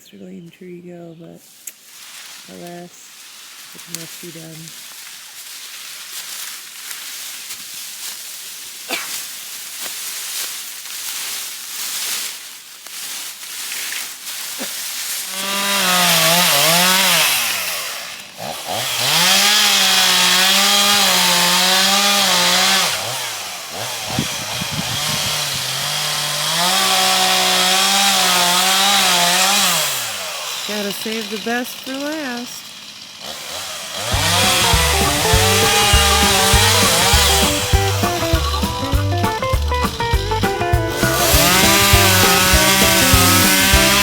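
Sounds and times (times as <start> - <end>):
rustling and crackling: 1.5 - 15.3
chainsaw cutting into tree: 13.7 - 44.0.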